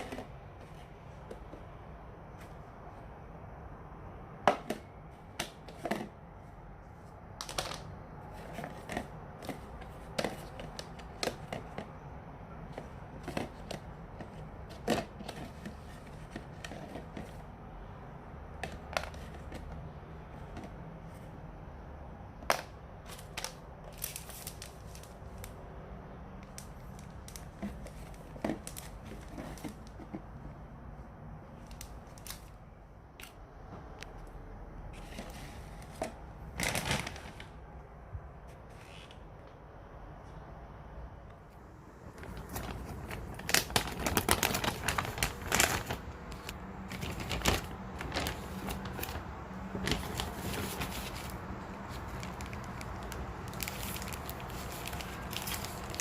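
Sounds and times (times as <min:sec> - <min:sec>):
light rustling of small objects: 0:42.1 - 0:56.0.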